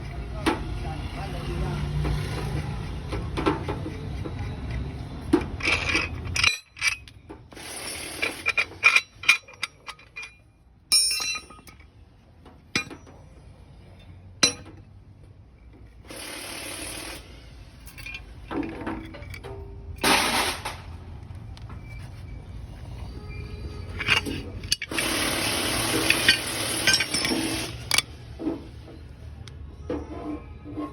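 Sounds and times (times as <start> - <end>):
metal tools clinking and tapping: 3.1 - 14.9, 17.8 - 20.0, 23.7 - 29.5.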